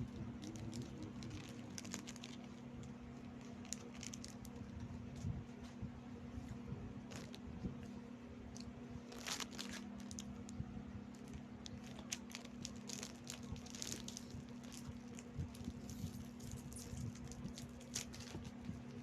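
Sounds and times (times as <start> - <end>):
wrapper crinkling: 0.0 - 4.7, 7.1 - 7.4, 9.1 - 10.5, 11.1 - 19.0
steady low hum: 0.0 - 19.0
biscuits crunching while chewed: 0.2 - 2.8, 11.2 - 19.0.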